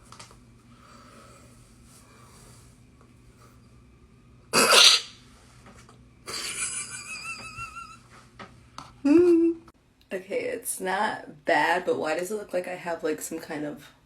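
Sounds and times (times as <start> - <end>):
loud sneeze: 4.6 - 5.1.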